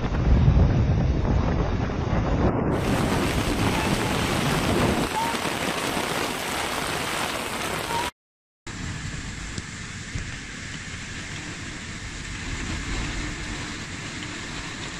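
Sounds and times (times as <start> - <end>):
heavy rain pouring: 2.7 - 8.1, 8.7 - 14.9.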